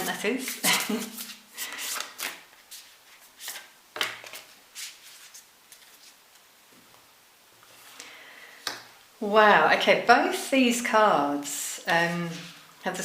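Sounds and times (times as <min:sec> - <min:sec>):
cards being shuffled: 0:00.0 - 0:06.5.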